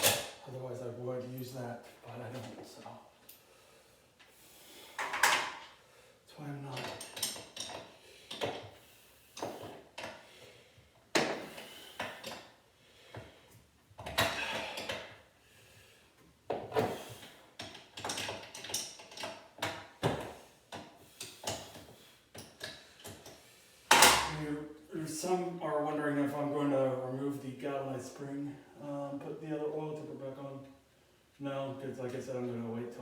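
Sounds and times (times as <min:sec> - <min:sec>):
metal tools clanking and clicking: 0:06.8 - 0:08.5.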